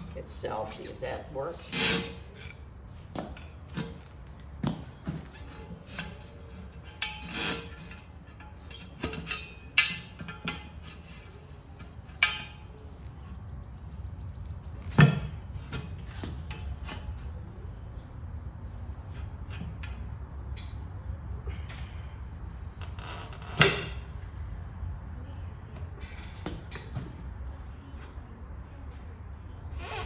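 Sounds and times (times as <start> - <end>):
maul striking metal wheel rim: 12.2 - 12.8, 14.8 - 17.2.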